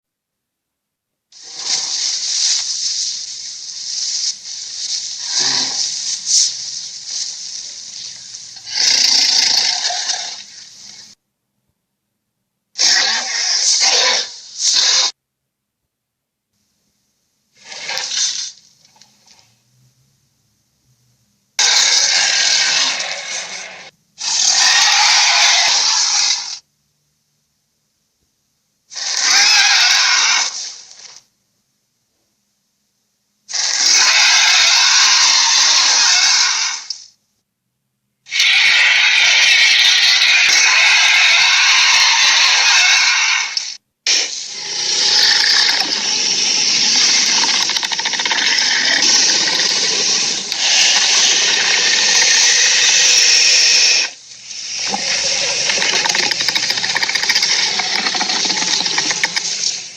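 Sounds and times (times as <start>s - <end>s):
harsh hissing creature calls: 1.4s - 11.2s, 12.8s - 15.2s, 17.6s - 18.6s, 21.6s - 26.6s, 28.9s - 31.2s, 33.5s - 37.1s, 38.3s - 59.9s.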